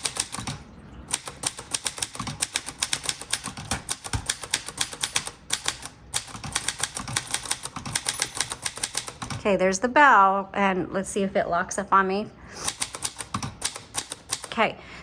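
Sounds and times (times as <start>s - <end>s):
typewriter keystroke clacks: 0.0s - 9.4s, 12.7s - 14.6s.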